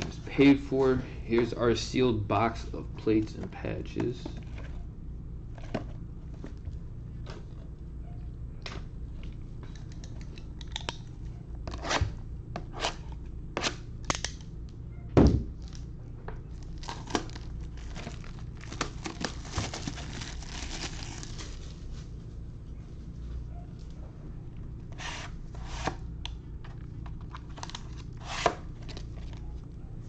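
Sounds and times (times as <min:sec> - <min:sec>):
shrink-wrap ripping: 0:16.6 - 0:21.6
plastic wrap crinkling: 0:16.6 - 0:22.2.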